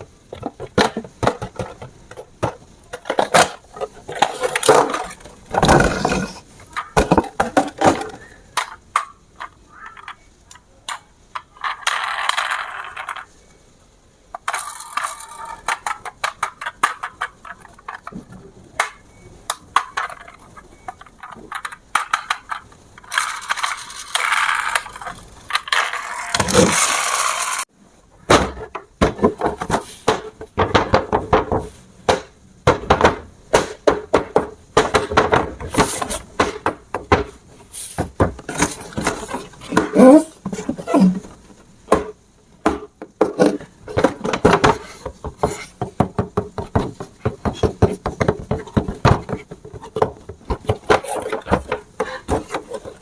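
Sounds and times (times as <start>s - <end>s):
scraping or rustling: 34.3s - 42.2s, 42.9s - 53.0s.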